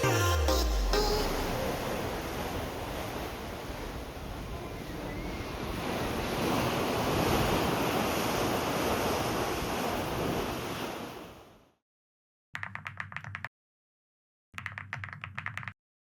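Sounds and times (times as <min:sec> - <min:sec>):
ocean waves rushing: 0:00.0 - 0:11.5.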